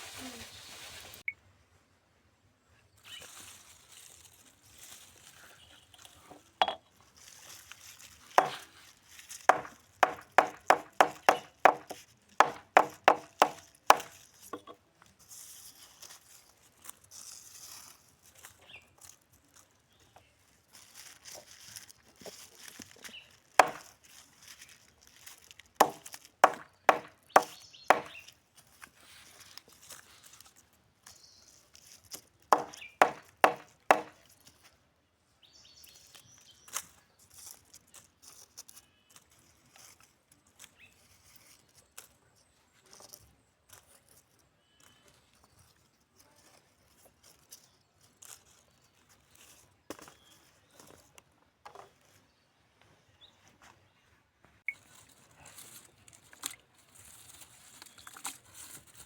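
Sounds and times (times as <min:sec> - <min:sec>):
knife chopping on a board: 0:08.4 - 0:08.6, 0:09.5 - 0:14.1, 0:23.6 - 0:23.8, 0:25.8 - 0:28.2, 0:32.6 - 0:34.1.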